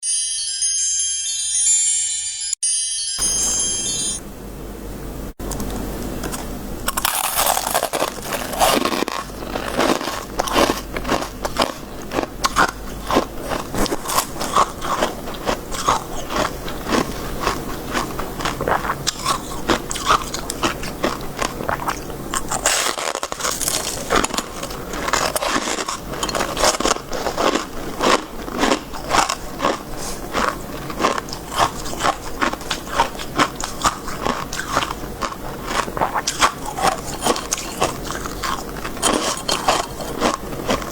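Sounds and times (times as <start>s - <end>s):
ice crunching while chewed: 5.6s - 40.9s.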